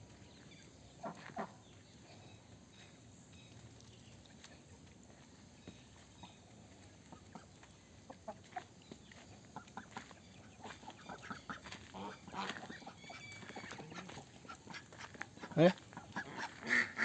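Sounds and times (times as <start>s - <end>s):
ducks calling: 9.6s - 17.0s.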